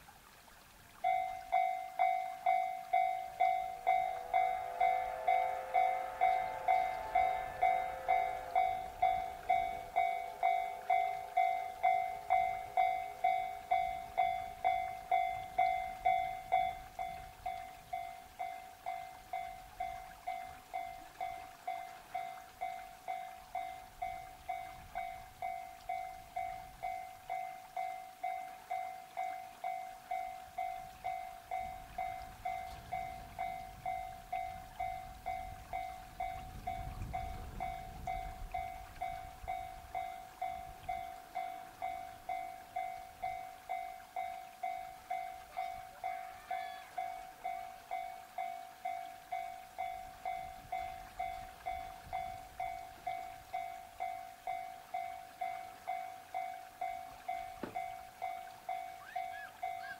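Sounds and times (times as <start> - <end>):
level crossing bell ringing: 1.1 - 19.1.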